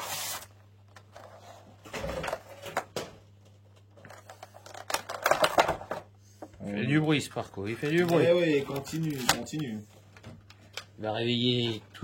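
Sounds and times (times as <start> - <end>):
packaging clicking and rustling: 2.1 - 6.0, 7.7 - 9.8.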